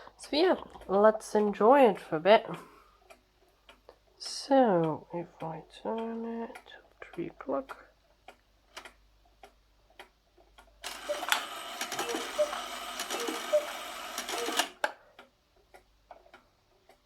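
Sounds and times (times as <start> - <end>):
clock ticking: 0.2 - 17.0
clock strike train whirring: 10.8 - 14.8
cuckoo clock calls: 10.8 - 14.8.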